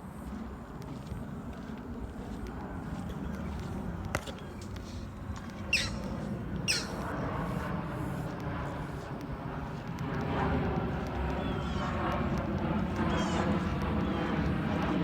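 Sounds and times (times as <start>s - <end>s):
steady low rumble: 0.0s - 15.0s
bird giving falling calls: 5.7s - 7.0s, 13.0s - 14.4s.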